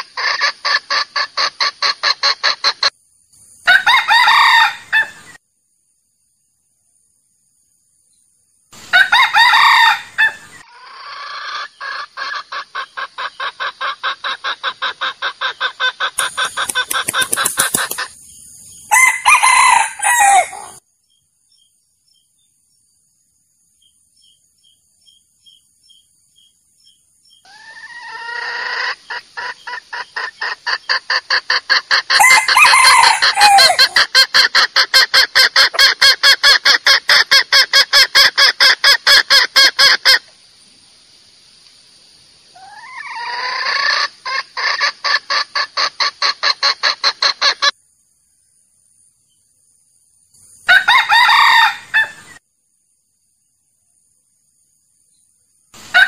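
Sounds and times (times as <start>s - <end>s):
hen clucking rapidly: 0.0s - 2.9s, 10.8s - 18.2s, 27.5s - 40.2s, 42.8s - 47.7s
rooster crowing: 3.7s - 5.2s, 8.9s - 11.0s, 18.9s - 20.8s, 32.1s - 34.0s, 50.7s - 52.4s.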